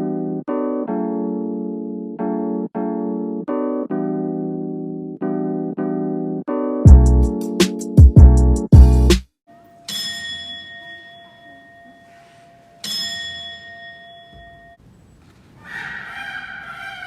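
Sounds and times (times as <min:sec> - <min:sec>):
bell ringing: 0:09.5 - 0:15.2.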